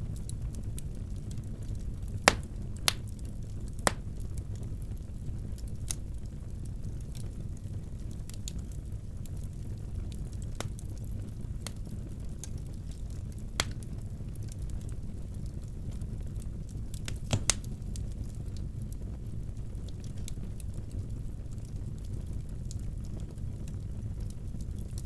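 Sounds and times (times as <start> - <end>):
fire crackling and popping: 0.0 - 25.0
wood fire rumbling: 0.0 - 25.0.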